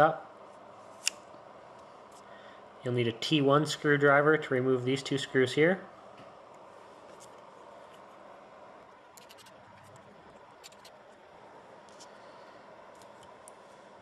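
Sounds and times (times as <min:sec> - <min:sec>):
low room hiss: 0:00.0 - 0:14.0
small screwdriver clicks and scrapes: 0:09.2 - 0:09.6, 0:10.6 - 0:10.9.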